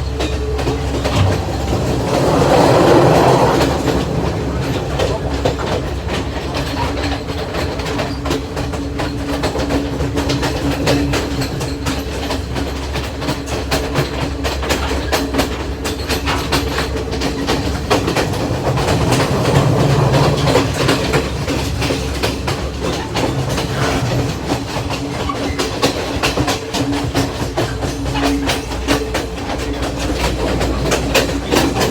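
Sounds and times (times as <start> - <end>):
train wheels clattering on rails: 0.0 - 31.9.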